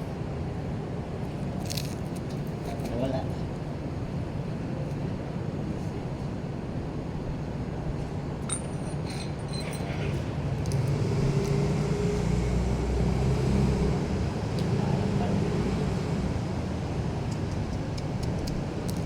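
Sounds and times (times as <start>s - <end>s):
vehicle engine rumble: 3.5s - 19.0s
engine hum: 7.4s - 19.0s
light metallic clinks: 8.4s - 10.8s.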